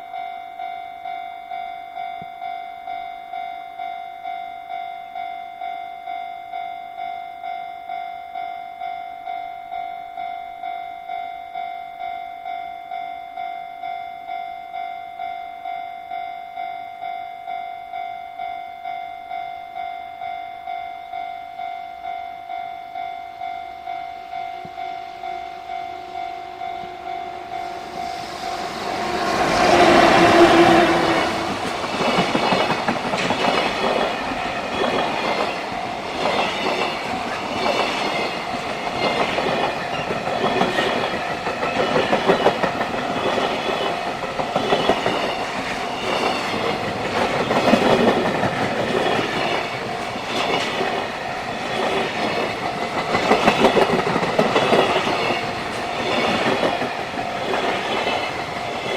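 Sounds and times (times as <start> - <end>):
level-crossing bell ringing: 0.0 - 58.9
train horn: 24.2 - 31.8
train wheels clickety-clack: 27.8 - 58.9.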